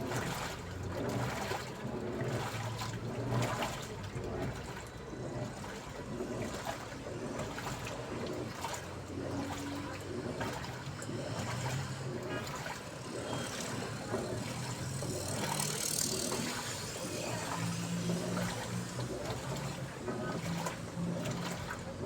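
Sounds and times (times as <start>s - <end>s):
washing machine motor hum: 0.0s - 22.0s
water moving in drum: 0.0s - 22.0s.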